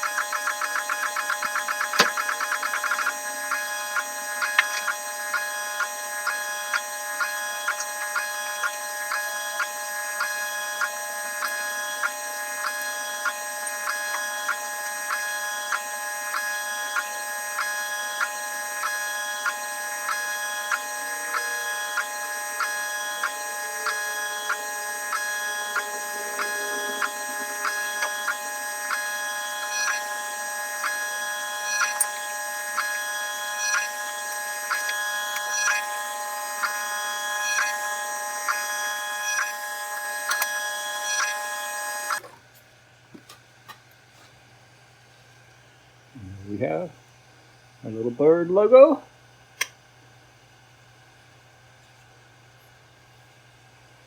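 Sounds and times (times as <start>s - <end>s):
stepper motors whining: 0.0s - 42.3s
faint hum: 18.8s - 42.4s, 44.7s - 49.4s.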